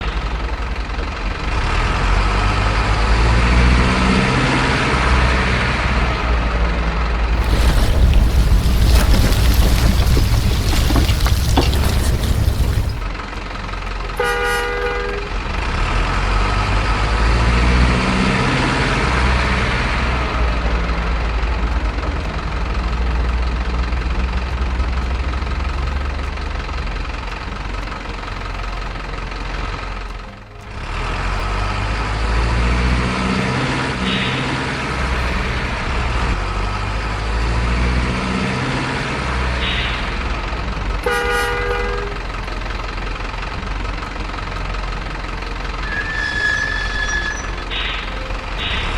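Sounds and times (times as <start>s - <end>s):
diesel truck engines rumbling: 0.0s - 48.9s
truck horn blast: 14.2s - 15.3s, 41.0s - 42.3s.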